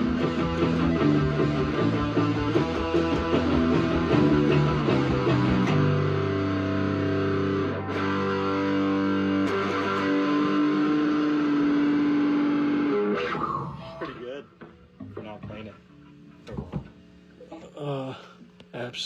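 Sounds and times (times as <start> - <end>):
guitar playing: 0.0 - 17.9.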